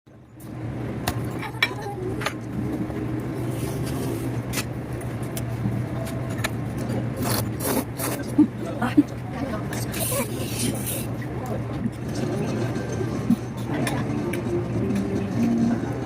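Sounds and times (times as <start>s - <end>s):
steady low hum: 0.1s - 16.0s.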